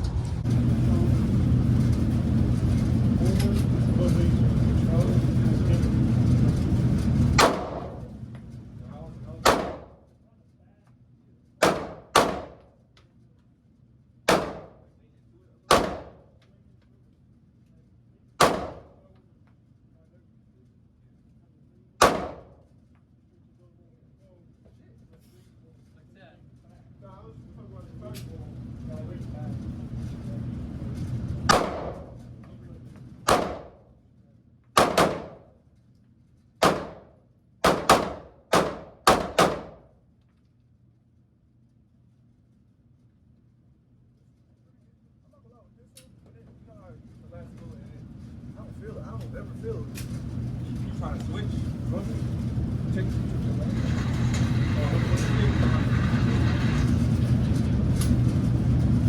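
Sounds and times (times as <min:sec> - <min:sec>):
pistol shots with echo: 0:07.4 - 0:08.0, 0:09.4 - 0:10.0, 0:11.6 - 0:12.6, 0:14.3 - 0:14.8, 0:15.7 - 0:16.2, 0:18.4 - 0:19.0, 0:22.0 - 0:22.6, 0:31.5 - 0:32.2, 0:33.3 - 0:33.8, 0:34.8 - 0:35.5, 0:36.6 - 0:39.9.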